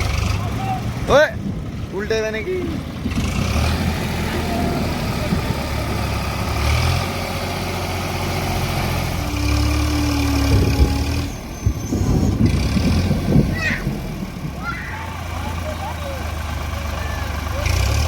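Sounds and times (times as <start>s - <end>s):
heavy diesel engine droning: 0.0s - 18.0s
steady higher tone: 9.0s - 11.5s.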